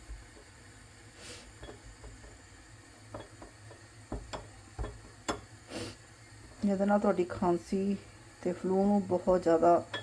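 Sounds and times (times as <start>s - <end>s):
short hiss: 1.1s - 1.6s, 5.7s - 6.0s.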